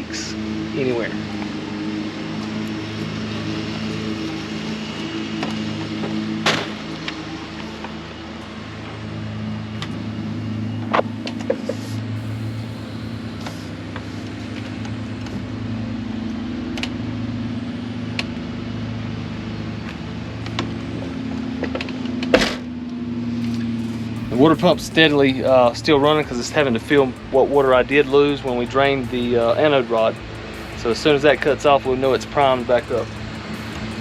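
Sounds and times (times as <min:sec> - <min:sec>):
water pump droning hum: 0:09.0 - 0:14.4, 0:23.4 - 0:29.3.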